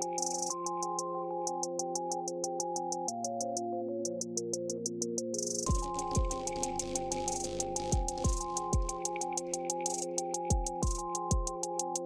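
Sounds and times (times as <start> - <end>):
rapid hi-hat ticks: 0.0 - 0.9, 1.6 - 12.0
deep kick drums: 5.7 - 7.0, 7.6 - 9.0
sustained synth notes: 5.7 - 9.0.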